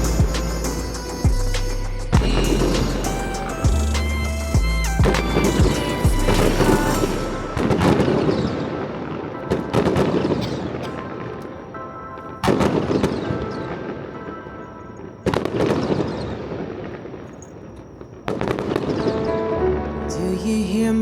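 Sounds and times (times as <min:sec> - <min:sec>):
person singing: 0:00.0 - 0:08.4, 0:19.5 - 0:21.0
music playing: 0:00.0 - 0:15.6, 0:19.0 - 0:21.0
fireworks exploding: 0:00.0 - 0:19.6.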